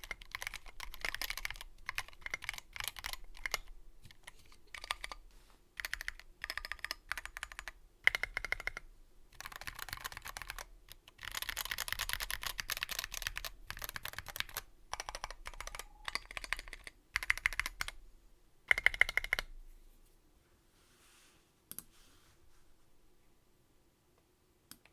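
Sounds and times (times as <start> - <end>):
typing on mechanical keyboard: 0.0 - 5.2, 5.8 - 18.0, 18.7 - 19.5.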